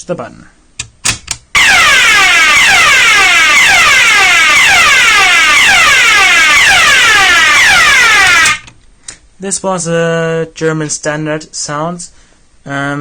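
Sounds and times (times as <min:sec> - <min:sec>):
fire alarm falling sweep tone: 0:01.6 - 0:08.7.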